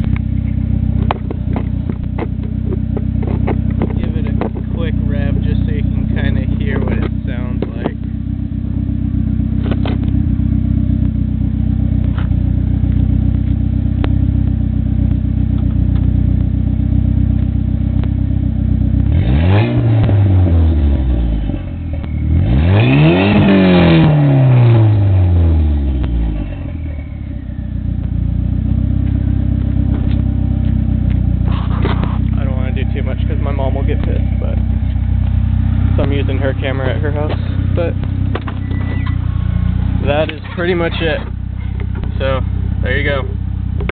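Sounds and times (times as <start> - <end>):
car engine idling and revving: 0.0 - 43.9.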